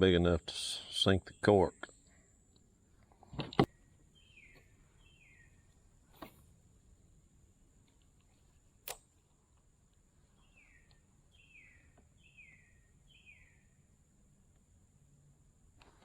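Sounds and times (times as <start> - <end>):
faint bird calling: 3.7 - 6.3, 10.1 - 13.9
sharp click: 8.8 - 9.2.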